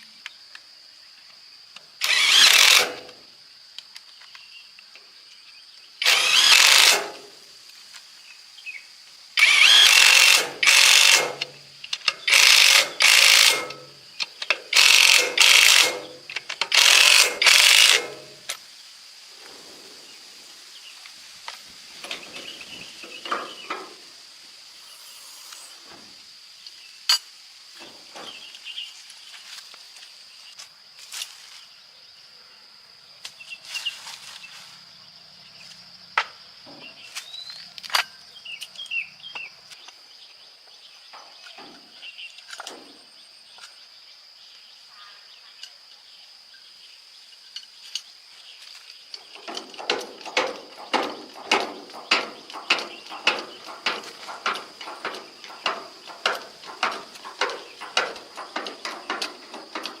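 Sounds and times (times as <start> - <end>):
high insect drone: 0.0 - 60.0
regular strokes: 24.6 - 26.2.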